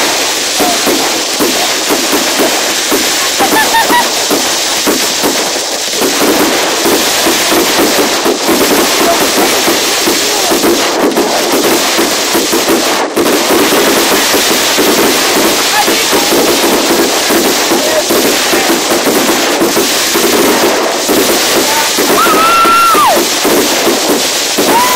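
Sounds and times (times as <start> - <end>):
crowd chatter: 0.0 - 5.8, 15.4 - 19.1
fireworks crackling: 0.0 - 24.9.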